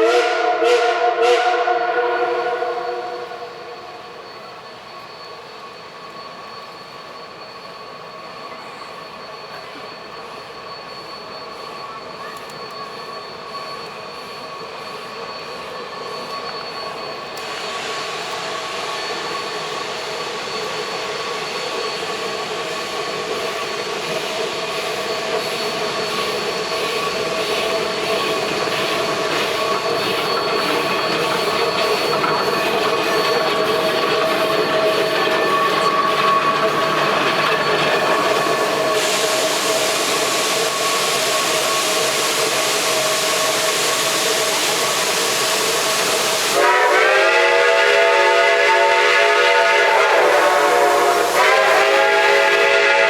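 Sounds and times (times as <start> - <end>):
high-pitched wheel squeal on rails: 0.0 - 53.0
steam locomotives approaching: 0.0 - 53.0
broad hissing rush: 17.4 - 32.2, 34.6 - 47.2, 49.7 - 52.7.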